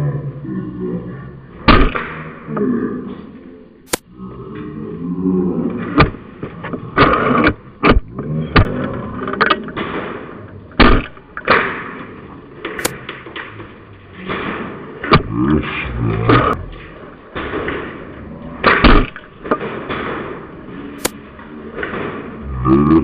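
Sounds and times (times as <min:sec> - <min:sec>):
sharp clacks and knocks: 0:12.6 - 0:15.3, 0:18.6 - 0:21.2.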